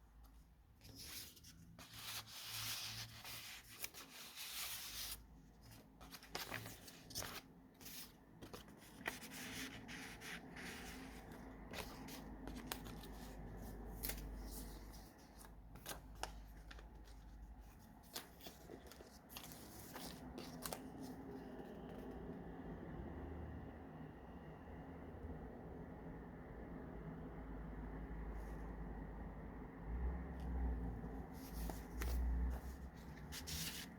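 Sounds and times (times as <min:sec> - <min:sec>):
paper pages rustling and crinkling: 0:00.0 - 0:22.2, 0:31.1 - 0:33.9.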